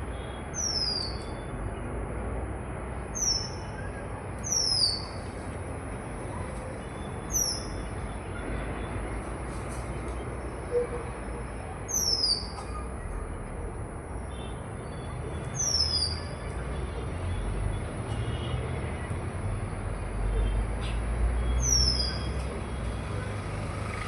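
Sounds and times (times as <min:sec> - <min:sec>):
small bird calling: 0:04.4 - 0:05.2.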